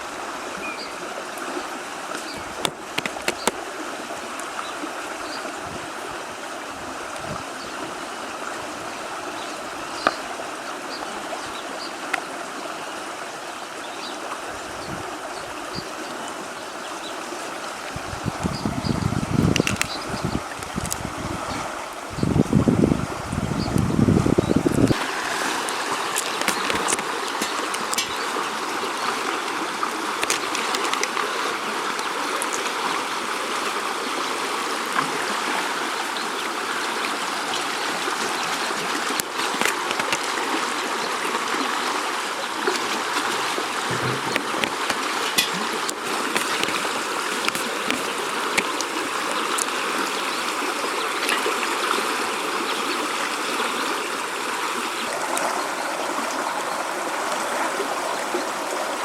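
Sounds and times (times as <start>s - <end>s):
river flowing: 0.0s - 59.0s
small ticks and taps: 2.1s - 3.6s, 10.0s - 10.2s, 26.1s - 28.3s.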